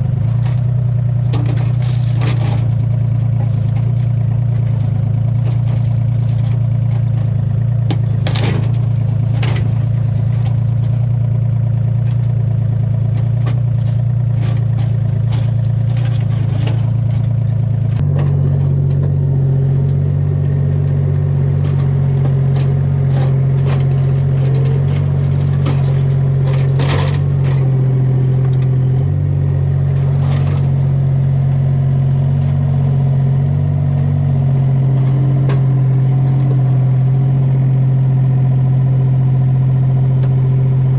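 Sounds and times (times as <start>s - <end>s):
excavator diesel engine running: 0.0s - 40.9s
bucket knocks and clatter: 5.3s - 10.9s.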